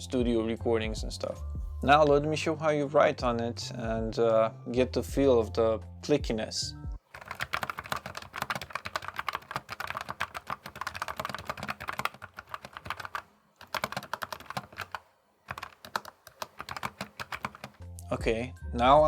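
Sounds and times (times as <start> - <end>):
keyboard typing: 7.0 - 17.8.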